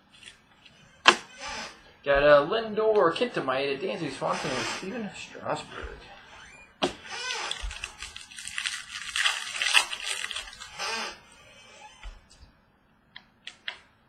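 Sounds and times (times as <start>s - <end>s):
packaging and cards crinkling: 7.5s - 10.8s.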